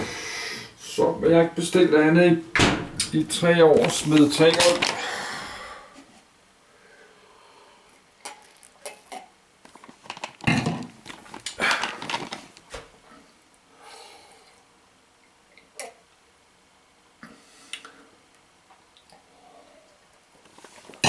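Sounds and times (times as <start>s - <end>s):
rustling noises: 3.0s - 5.1s, 9.6s - 13.2s, 20.4s - 21.0s.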